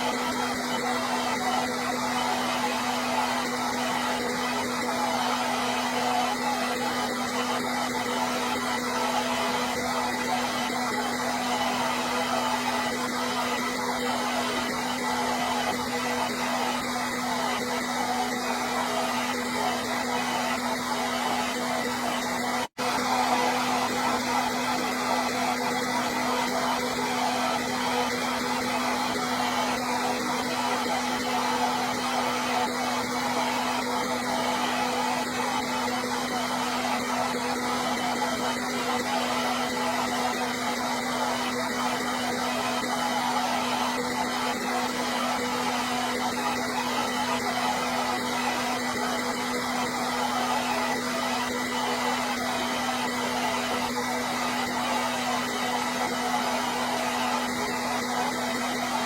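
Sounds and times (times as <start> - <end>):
hair dryer running: 0.0 - 59.0.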